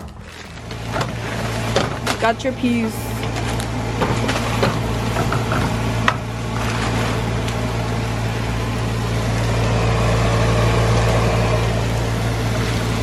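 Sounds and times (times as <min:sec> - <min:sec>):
steady low hum: 0:00.0 - 0:13.0
vegetables and rice frying in a pan: 0:03.3 - 0:13.0.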